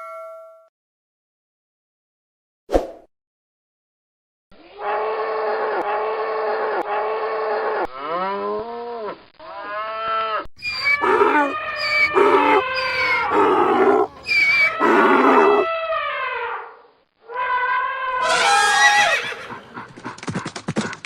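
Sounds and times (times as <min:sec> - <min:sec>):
donkey braying: 0:10.6 - 0:15.7
cow mooing: 0:10.8 - 0:15.7.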